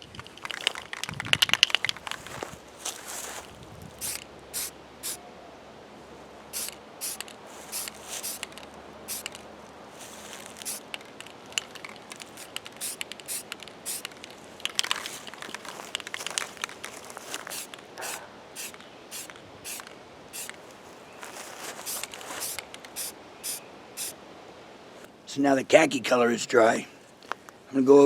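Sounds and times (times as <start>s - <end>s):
spray paint can hissing: 4.0s - 5.2s, 6.6s - 9.4s, 10.6s - 14.2s, 17.4s - 20.6s, 21.8s - 24.2s.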